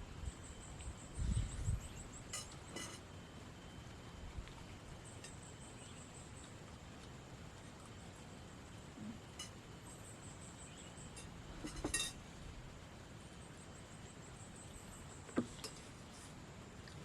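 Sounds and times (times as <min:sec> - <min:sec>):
cutlery clinking on plate: 0:02.4 - 0:03.0, 0:11.1 - 0:12.2.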